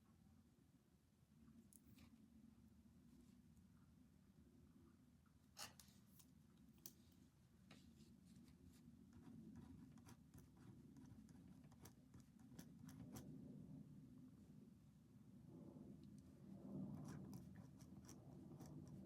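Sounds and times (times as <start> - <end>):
low room hum: 0.0 - 19.0
pen writing on paper: 9.2 - 13.3, 17.0 - 19.0.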